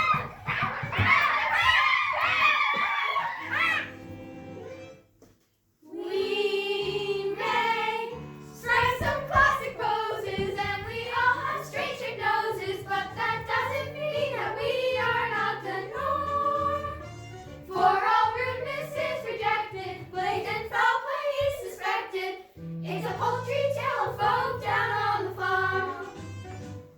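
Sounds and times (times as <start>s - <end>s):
young voices singing: 5.8s - 17.1s, 17.7s - 26.2s.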